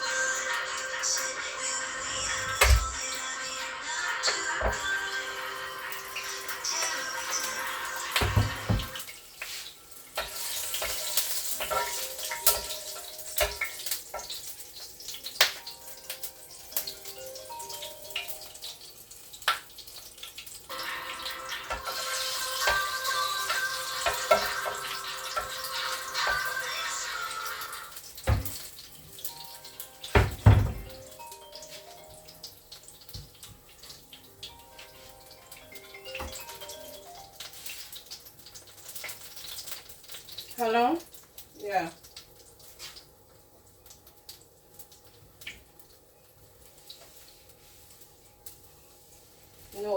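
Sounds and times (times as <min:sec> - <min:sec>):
faint background music: 0:00.0 - 0:49.9
kitchen clicks and knocks: 0:08.2 - 0:09.0, 0:28.2 - 0:28.7, 0:30.1 - 0:31.1.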